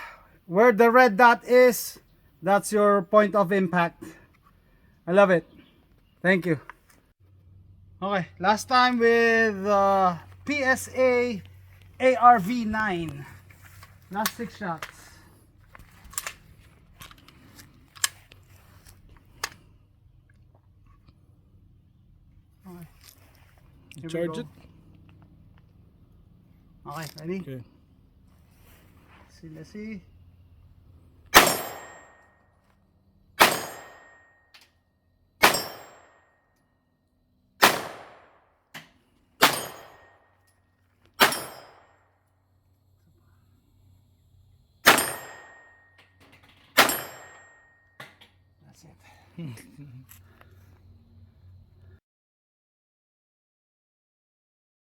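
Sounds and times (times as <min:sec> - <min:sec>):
rifle gunshots: 0:31.3 - 0:32.2, 0:33.4 - 0:34.2, 0:35.4 - 0:36.1, 0:37.6 - 0:38.4, 0:39.4 - 0:40.1, 0:41.2 - 0:41.8, 0:44.8 - 0:45.6, 0:46.8 - 0:47.4
gunshots with echo: 0:31.4 - 0:32.2, 0:33.4 - 0:34.2, 0:35.4 - 0:36.1, 0:37.6 - 0:38.3.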